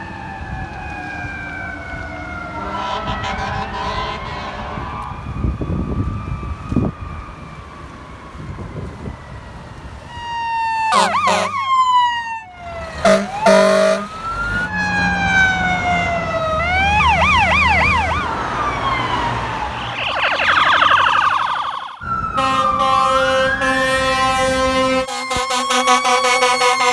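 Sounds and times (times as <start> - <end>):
fire truck air horn blasts: 2.5 - 5.2, 10.9 - 11.8, 13.0 - 14.6, 22.2 - 26.9
siren wailing and yelping: 10.1 - 26.9.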